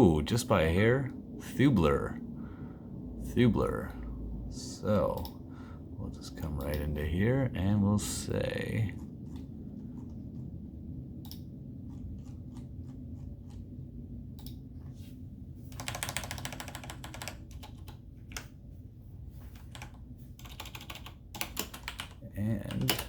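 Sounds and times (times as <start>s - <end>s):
typing on computer keyboard: 15.7s - 18.5s, 19.6s - 23.0s.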